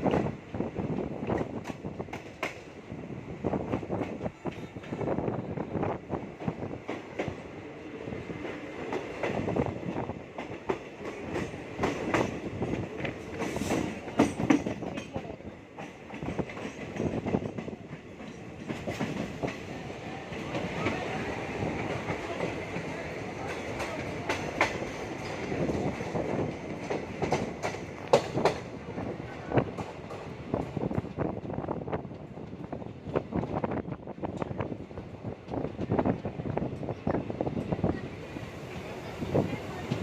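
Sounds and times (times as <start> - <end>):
train wheels clattering over rail joints: 8.4 - 28.8.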